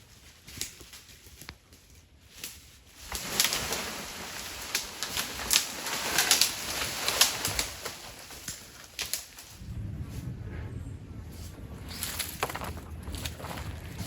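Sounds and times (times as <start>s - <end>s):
brush and branches rustling: 0.0s - 10.4s, 11.2s - 14.0s
twigs snapping: 0.4s - 9.6s, 11.9s - 13.6s.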